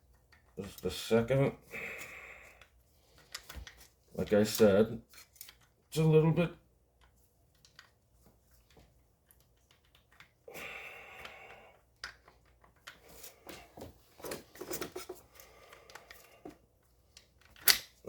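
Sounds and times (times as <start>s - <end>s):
metallic gun parts clicking: 17.2s - 18.0s.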